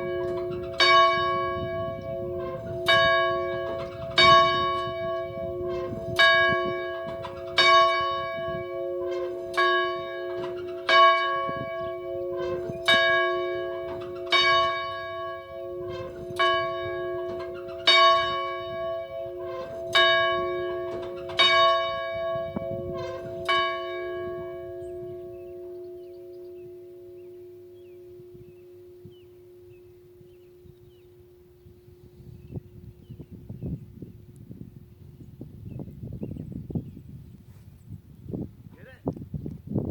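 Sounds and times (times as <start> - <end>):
church bell ringing: 0.0 - 32.3.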